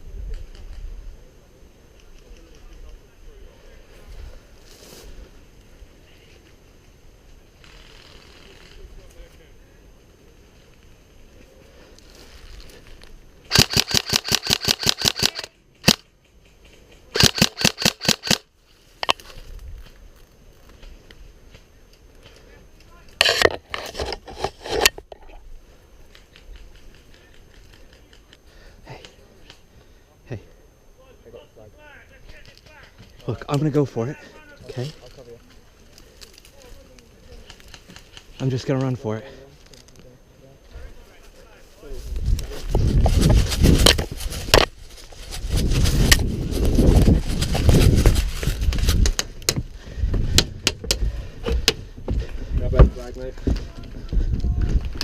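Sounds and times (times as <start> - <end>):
rustle: 3.8 - 21.7, 39.5 - 49.2
sharp irregular clicks: 13.4 - 18.4, 26.1 - 28.4
running footsteps ticking: 42.2 - 55.0.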